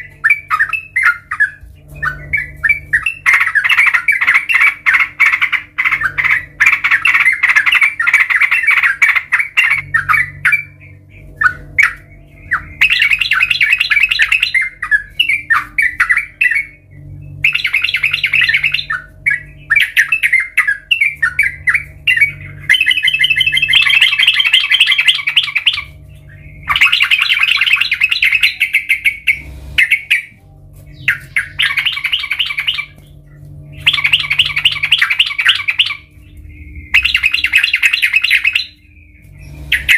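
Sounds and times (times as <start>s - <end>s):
bird chattering song: 0.0s - 39.9s.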